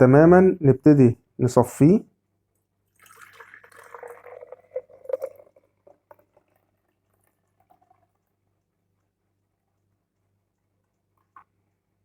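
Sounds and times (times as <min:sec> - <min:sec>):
liquid pouring through strainer: 0:02.9 - 0:09.1
liquid dripping: 0:02.9 - 0:11.8.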